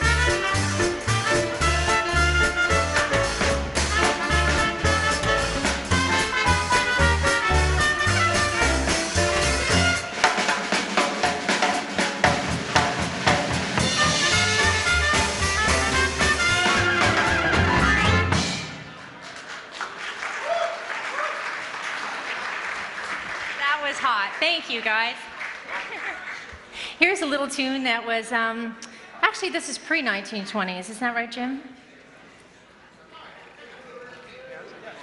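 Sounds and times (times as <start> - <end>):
swing band playing: 0.0 - 19.2
audience applause: 18.9 - 26.8.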